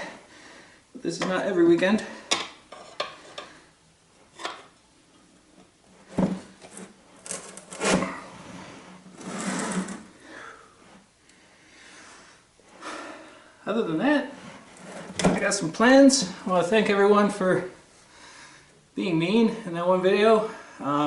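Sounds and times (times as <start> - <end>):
tire bead scraping over rim: 7.4 - 10.1.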